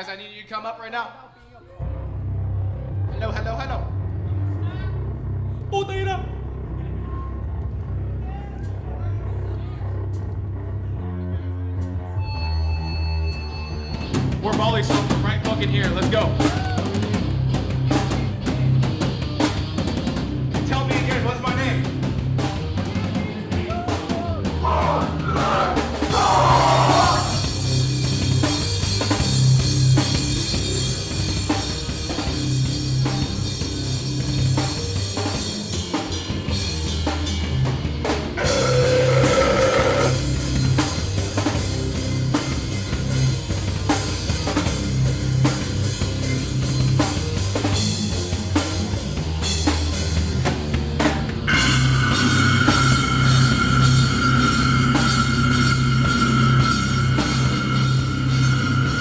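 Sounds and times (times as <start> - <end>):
drum kit beat with cymbals: 13.3 - 59.0
rock band playing live: 13.3 - 59.0
held high tones: 51.5 - 59.0.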